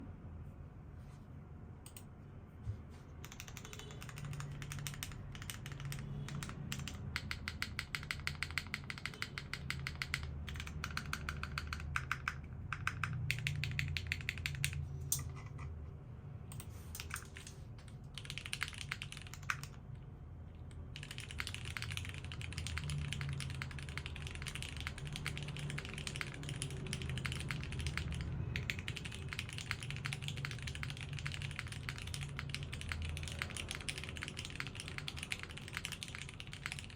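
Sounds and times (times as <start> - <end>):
mechanical keyboard typing: 3.2 - 15.8, 16.5 - 20.0, 20.6 - 36.9.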